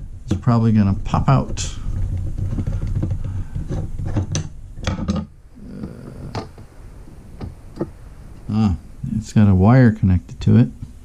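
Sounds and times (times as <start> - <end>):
low rubbing noise: 0.0 - 11.0.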